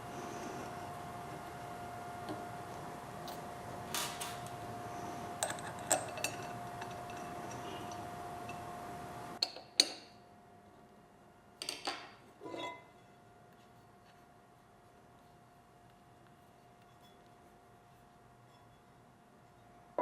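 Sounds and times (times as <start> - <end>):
steady machine hum: 0.0 - 9.4.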